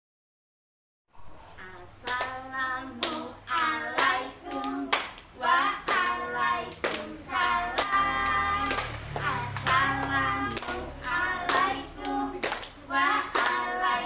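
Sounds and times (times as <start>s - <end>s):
children singing: 1.6s - 14.0s
hand claps: 3.0s - 14.0s.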